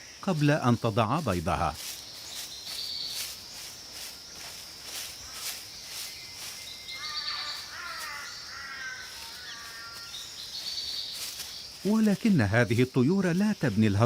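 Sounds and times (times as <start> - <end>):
insects chirping: 0.0 - 14.0
bird calling: 4.9 - 14.0.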